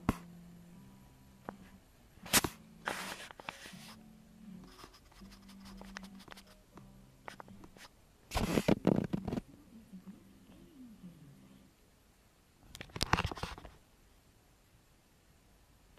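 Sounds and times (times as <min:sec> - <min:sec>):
faint steady hum: 0:00.0 - 0:15.9
scratching and rustling: 0:01.6 - 0:04.0, 0:04.6 - 0:09.6, 0:12.7 - 0:13.8.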